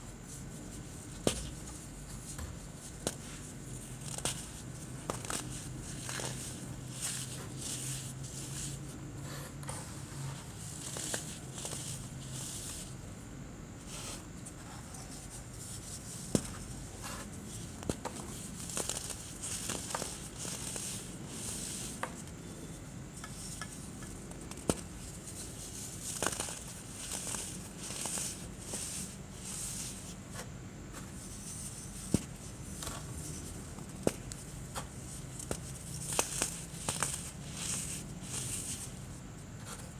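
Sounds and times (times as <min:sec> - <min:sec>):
baking soda clumps crunching: 0:03.0 - 0:08.7, 0:18.1 - 0:22.0, 0:24.7 - 0:30.0, 0:35.2 - 0:39.0.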